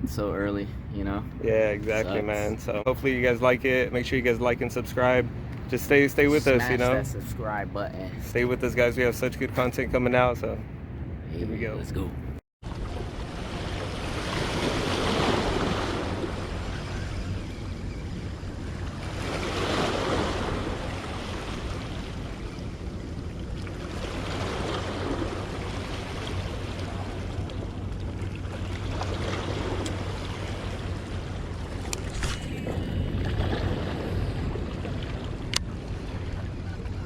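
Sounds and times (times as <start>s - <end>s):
low steady hum: 0.0s - 14.8s, 15.6s - 37.0s
small waves washing ashore: 12.6s - 37.0s.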